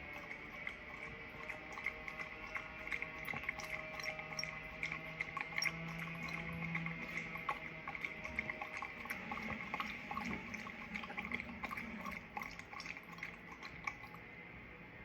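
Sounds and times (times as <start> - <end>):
dog lapping water: 0.0 - 14.3.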